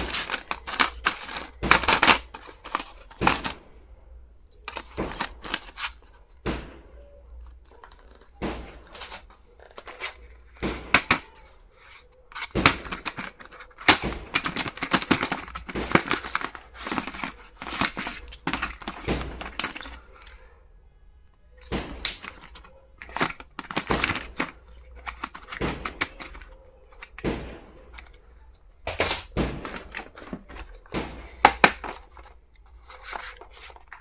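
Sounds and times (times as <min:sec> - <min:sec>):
packaging crinkling: 0:00.0 - 0:03.6, 0:07.6 - 0:11.2, 0:21.9 - 0:28.3.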